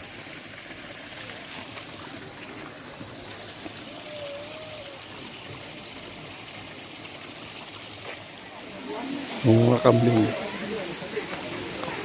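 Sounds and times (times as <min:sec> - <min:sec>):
high-pitched hiss: 0:00.0 - 0:12.0
water flowing in a channel: 0:00.0 - 0:12.0.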